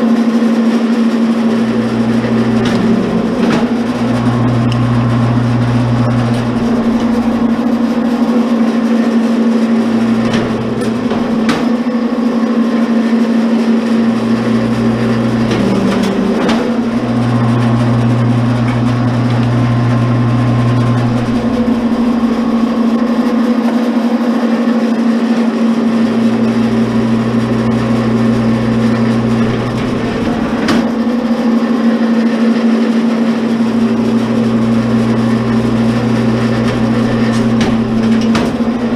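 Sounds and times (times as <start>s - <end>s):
wire stripper motor humming: 1.1s - 32.4s, 33.0s - 38.9s.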